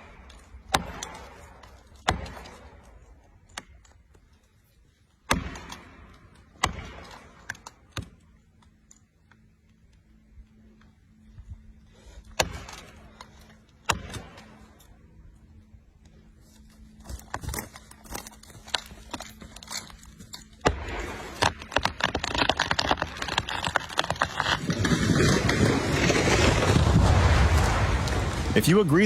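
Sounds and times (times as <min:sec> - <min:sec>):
faint steady hum: 0:00.0 - 0:22.1
axe strikes on tree: 0:00.7 - 0:03.0, 0:05.3 - 0:08.2, 0:12.3 - 0:13.0, 0:13.8 - 0:14.6.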